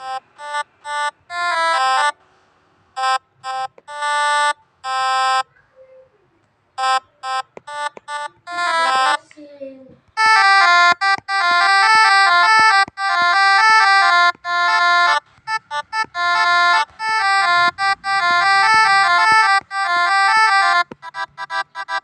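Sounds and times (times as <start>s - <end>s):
multi-tone musical air horn: 7.7s - 9.2s, 10.2s - 22.0s.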